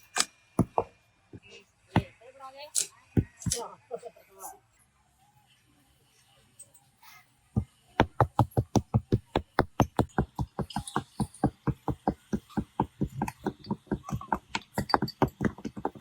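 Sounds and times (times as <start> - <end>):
rapid dull knocking: 0.6 - 0.9, 7.6 - 16.0.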